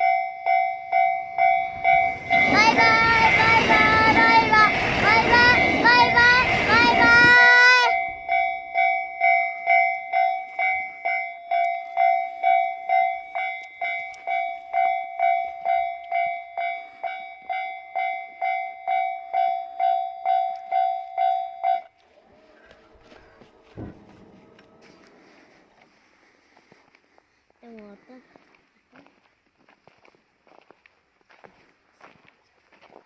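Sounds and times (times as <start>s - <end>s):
level crossing warning bell: 0.0s - 26.0s.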